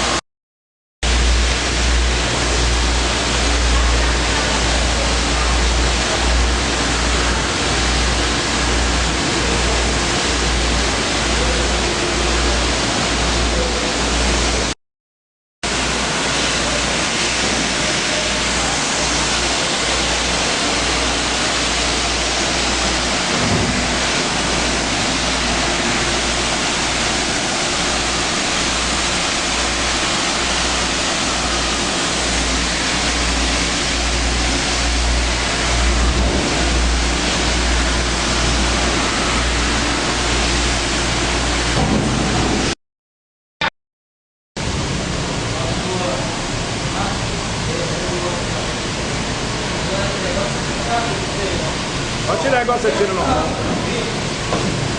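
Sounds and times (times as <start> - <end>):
machine low rumble: 1.0 - 14.7, 15.7 - 42.8
water spraying hiss: 15.7 - 42.7.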